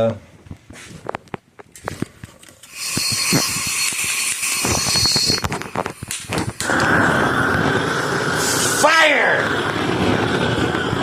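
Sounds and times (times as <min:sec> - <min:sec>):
fuse sizzling: 0:02.6 - 0:11.0
crackling firecracker pops: 0:03.1 - 0:07.8
steady rushing noise: 0:04.6 - 0:11.0.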